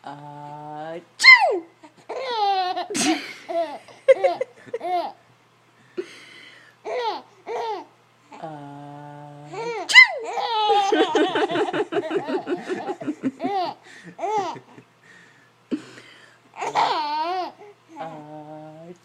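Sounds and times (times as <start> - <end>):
person sneezing: 2.9 - 3.4
young child belly laughing: 2.9 - 5.2, 10.5 - 14.9.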